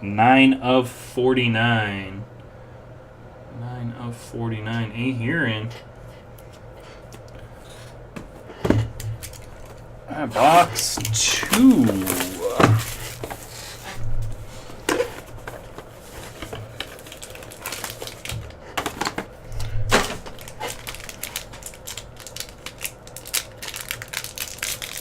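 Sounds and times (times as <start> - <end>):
cardboard and foil packs rustling: 7.6 - 25.0
plastic wrap crinkling: 9.1 - 19.3, 19.9 - 25.0.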